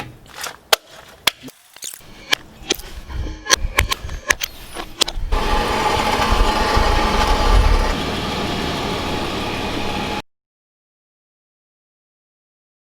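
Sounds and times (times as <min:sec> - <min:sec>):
vehicle engine running: 0:05.3 - 0:10.2.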